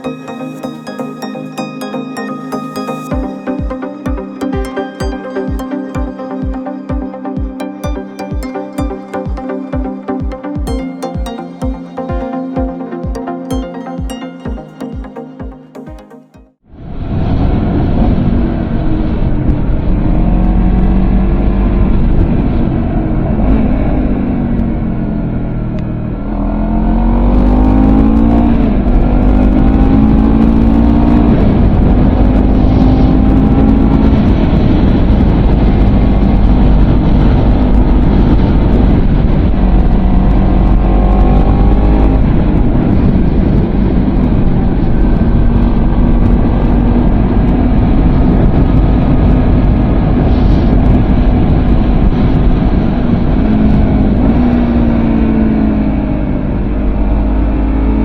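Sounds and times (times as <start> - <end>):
motorcycle engine revving: 26.2 - 34.4.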